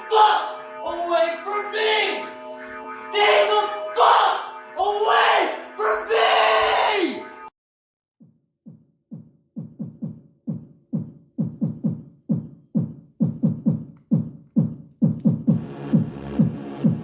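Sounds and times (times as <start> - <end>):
dense noisy music: 0.0 - 7.5, 15.5 - 17.0
deep kick drum beat: 8.2 - 17.0.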